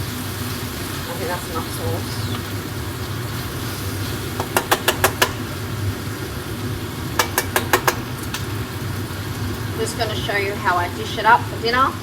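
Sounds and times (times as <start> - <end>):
utensil clicking against pan: 4.2 - 5.8, 7.1 - 8.6.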